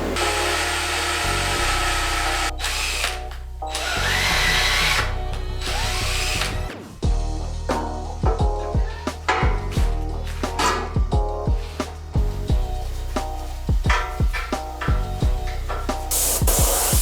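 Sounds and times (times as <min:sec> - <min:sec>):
power drill cutting sheet steel: 0:00.0 - 0:06.9
background music with bass line: 0:00.0 - 0:17.0.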